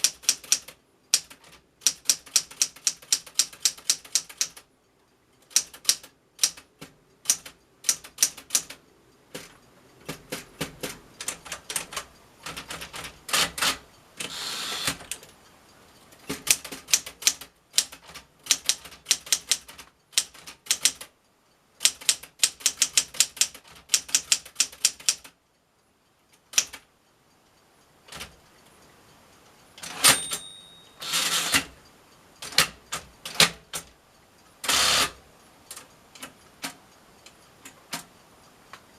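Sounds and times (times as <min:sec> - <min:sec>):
typewriter keystrokes: 0:00.0 - 0:04.7, 0:05.4 - 0:15.3, 0:16.2 - 0:21.1, 0:21.8 - 0:25.4, 0:26.5 - 0:26.9, 0:28.1 - 0:28.3, 0:29.8 - 0:31.7, 0:32.4 - 0:33.9
rasping typewriter strokes: 0:05.5 - 0:15.2, 0:31.0 - 0:31.7
brief ringing tone: 0:30.2 - 0:31.0.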